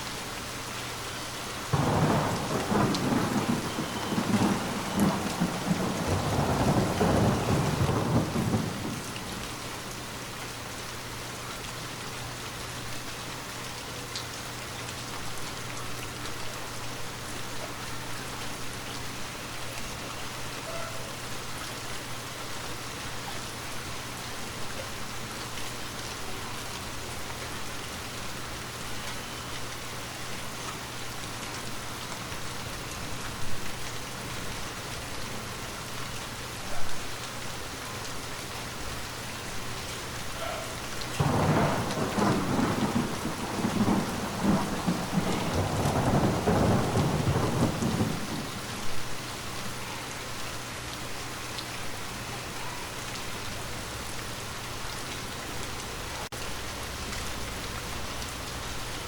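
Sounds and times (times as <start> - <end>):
steady rain falling: 0.0 - 59.0
thunder rumbling: 1.7 - 9.8, 41.2 - 49.2.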